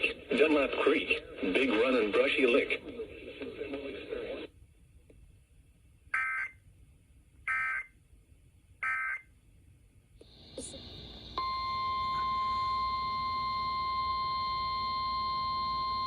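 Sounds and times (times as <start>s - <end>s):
radio static hiss: 0.0s - 4.6s, 10.2s - 11.4s
steady warning tone: 10.3s - 16.0s.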